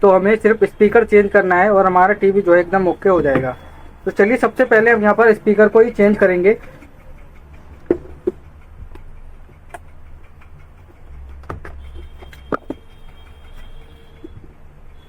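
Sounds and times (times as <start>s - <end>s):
tools clicking and tapping: 3.3s - 4.2s, 6.0s - 14.6s.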